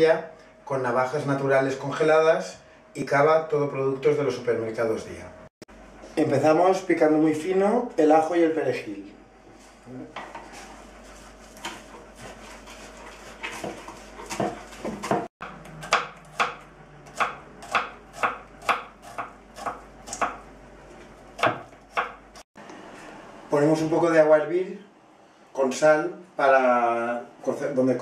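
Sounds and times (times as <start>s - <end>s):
knife chopping on cutting board: 11.5s - 20.4s, 21.4s - 22.4s.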